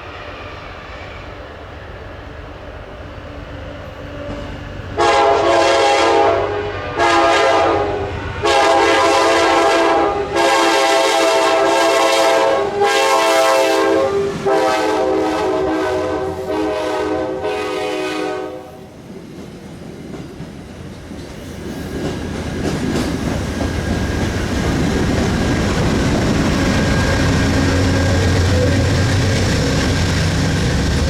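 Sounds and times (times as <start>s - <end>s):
train rumble: 0.0s - 31.0s
locomotive air horn blasts: 5.0s - 18.9s.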